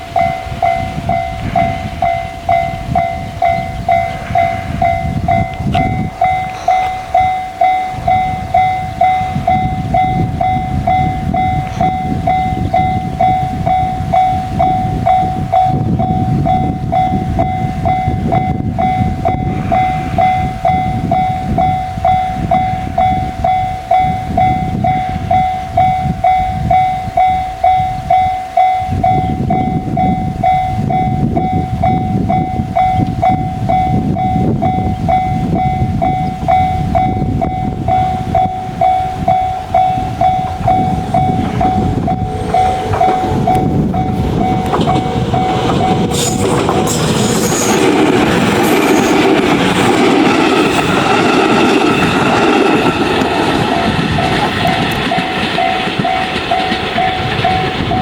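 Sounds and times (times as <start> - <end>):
train rumbling past: 0.0 - 58.0
level crossing electronic bell: 0.2 - 46.5.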